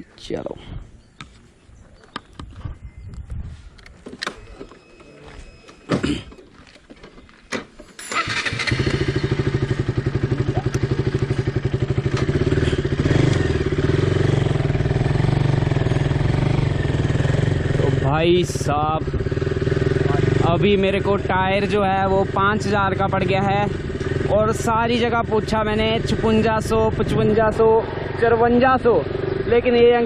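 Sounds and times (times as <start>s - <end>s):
motorcycle engine starting and idling: 4.0s - 30.0s.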